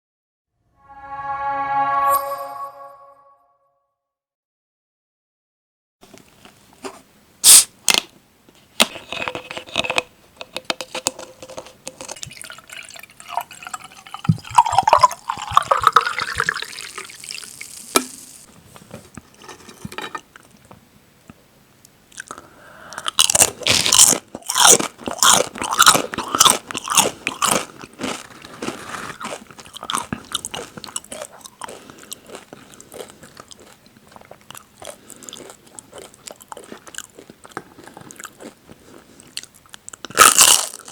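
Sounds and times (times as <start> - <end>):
crunching chips: 23.0 - 40.9.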